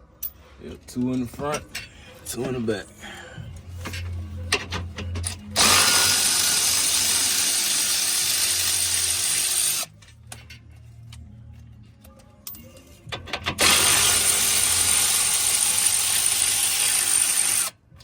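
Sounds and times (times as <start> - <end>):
power drill running: 5.6 - 9.9, 13.6 - 17.8.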